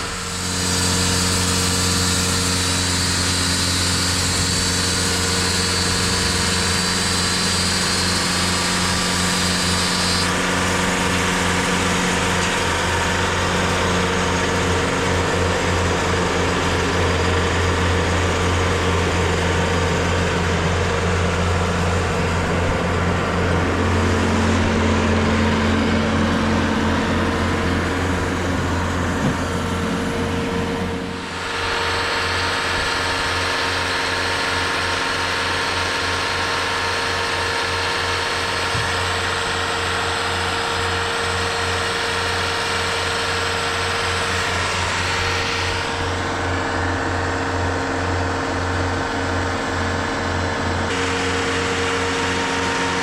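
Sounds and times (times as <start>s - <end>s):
sawmill engine humming: 0.0s - 53.0s
band saw blade cutting: 0.1s - 13.2s.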